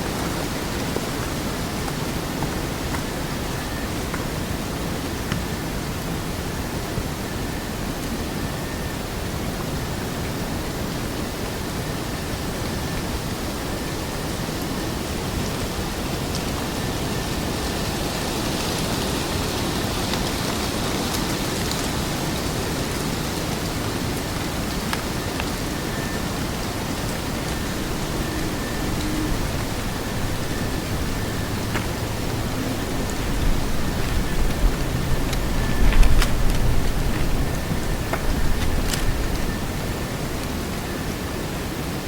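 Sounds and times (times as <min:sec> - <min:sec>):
stream water rushing: 0:14.6 - 0:42.0.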